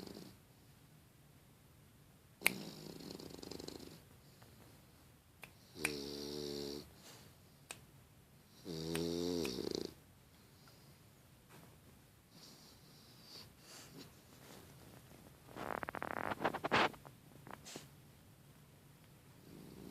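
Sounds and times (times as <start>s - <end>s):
puppy snoring: 0.0s - 0.4s, 2.4s - 4.1s, 5.6s - 7.2s, 8.5s - 10.0s, 12.3s - 14.2s, 15.5s - 17.9s, 19.4s - 19.9s.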